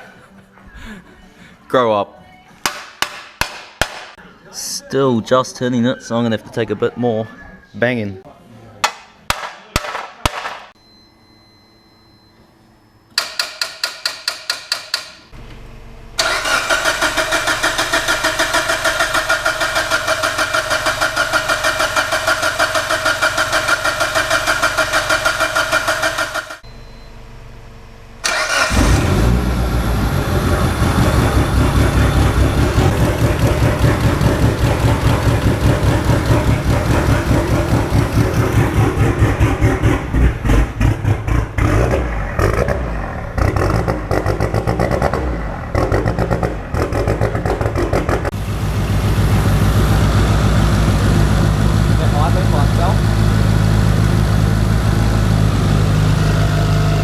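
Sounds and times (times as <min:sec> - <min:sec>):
car starter cranking: 0:16.2 - 0:26.6, 0:28.2 - 0:29.5
car engine running: 0:28.0 - 0:57.0.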